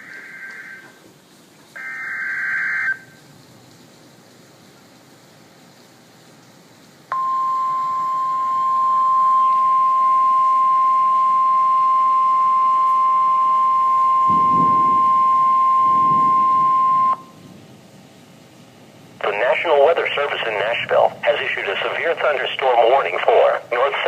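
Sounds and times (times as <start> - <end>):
steady alarm tone: 0.0 - 1.0, 1.8 - 3.2, 7.1 - 17.4.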